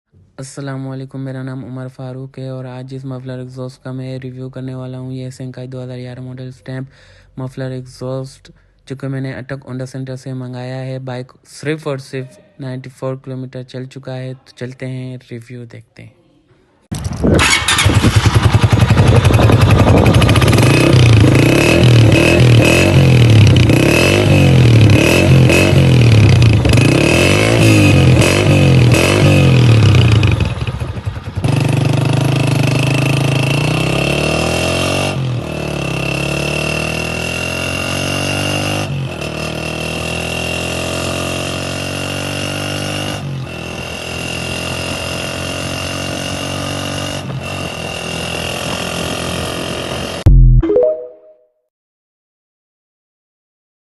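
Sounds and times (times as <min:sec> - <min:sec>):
motorcycle engine revving: 0:16.9 - 0:50.3.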